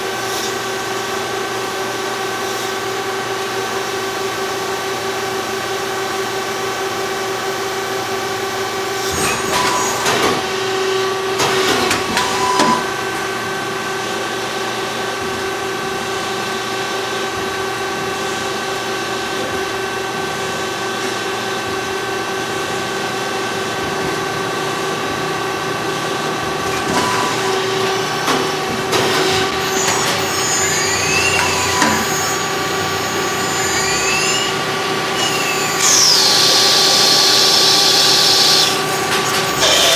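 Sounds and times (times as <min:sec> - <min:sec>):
machine tool humming: 0:08.9 - 0:39.9
spindle whine: 0:22.8 - 0:39.9
rattling cutting noise: 0:26.5 - 0:37.1.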